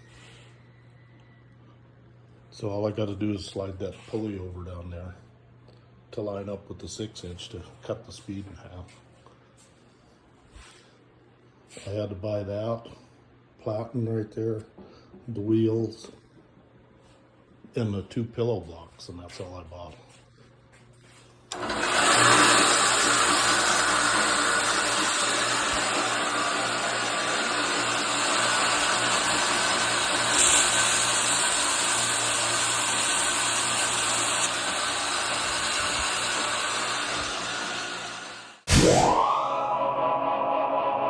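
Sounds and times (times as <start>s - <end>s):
belt grinder running: 21.5s - 38.6s.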